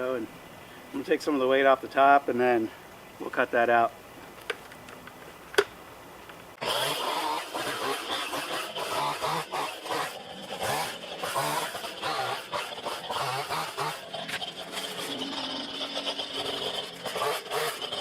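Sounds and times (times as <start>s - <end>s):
chainsaw cutting into tree: 6.6s - 18.0s.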